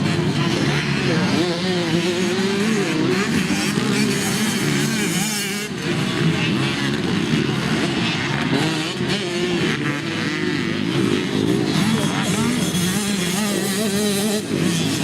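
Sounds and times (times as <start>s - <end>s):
dirt bike engines revving: 0.0s - 15.0s.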